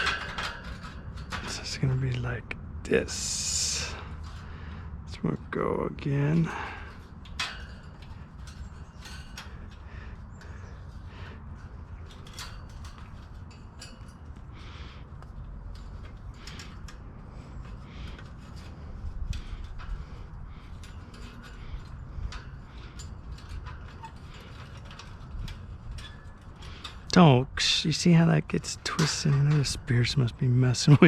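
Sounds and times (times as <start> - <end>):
light clicks and creaks of handling: 0.0 - 31.0
steady low rumble: 0.0 - 31.0.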